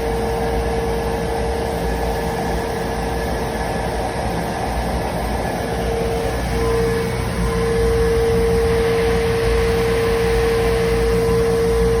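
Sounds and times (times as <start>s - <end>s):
welding arc buzzing with whine: 0.0s - 12.0s.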